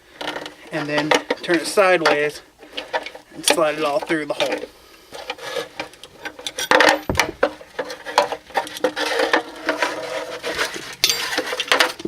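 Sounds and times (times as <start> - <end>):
plastic trim knocking and rubbing: 6.8 - 8.3.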